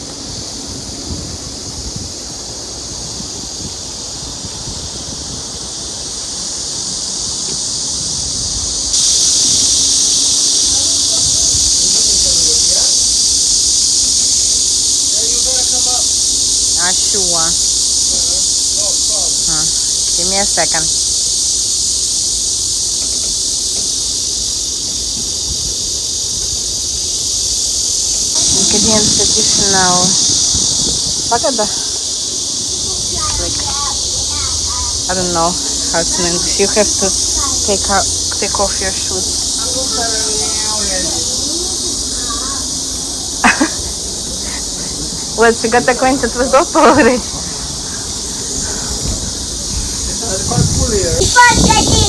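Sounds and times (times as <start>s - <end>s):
cicadas buzzing: 0.0s - 52.0s
wind rumble on microphone: 0.0s - 52.0s.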